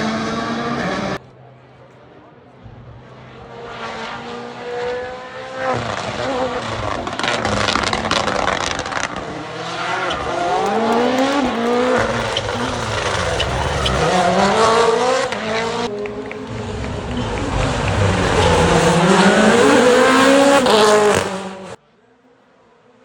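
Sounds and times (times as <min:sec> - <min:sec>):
rally car engine revving: 0:00.0 - 0:01.2, 0:02.8 - 0:21.8
tyre noise: 0:06.2 - 0:21.3
exhaust cracks and pops: 0:06.9 - 0:09.2, 0:10.0 - 0:14.2.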